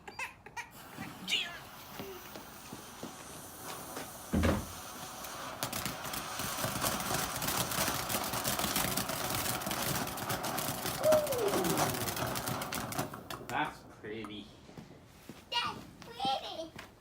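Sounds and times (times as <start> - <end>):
firework crackling pops: 0.7 - 13.8
firework thump: 1.8 - 15.0.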